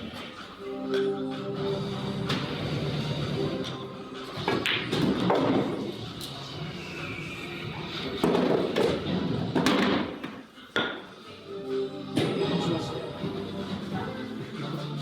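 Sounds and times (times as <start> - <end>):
pool balls clacking: 3.5 - 6.0, 8.1 - 11.0.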